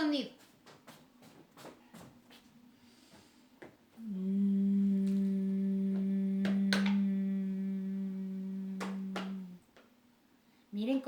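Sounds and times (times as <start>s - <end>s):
woman humming nasally: 4.0s - 9.7s.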